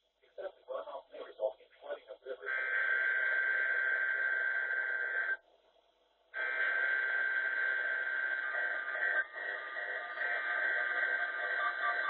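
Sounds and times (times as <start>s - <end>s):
harsh digital data buzz: 6.4s - 12.0s.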